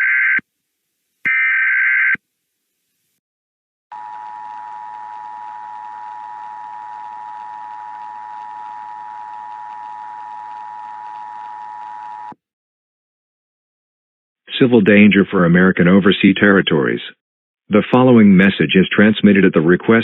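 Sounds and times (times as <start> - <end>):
two-tone alarm: 3.9 - 12.4.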